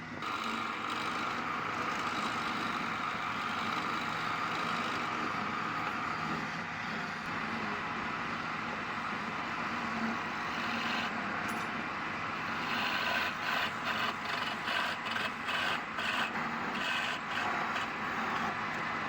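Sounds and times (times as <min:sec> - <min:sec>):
wood lathe tool hissing on wood: 0:12.4 - 0:18.5.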